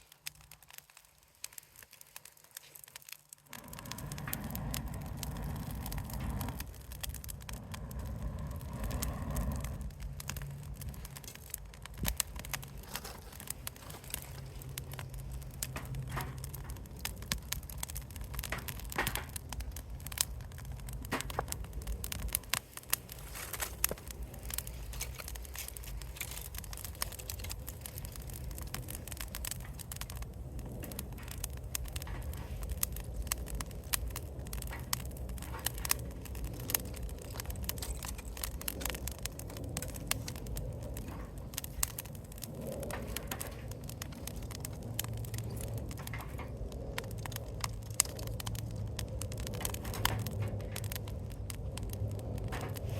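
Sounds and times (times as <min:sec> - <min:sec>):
low rumble of fire: 0:00.0 - 0:52.9
wood fire crackling: 0:00.0 - 0:52.9.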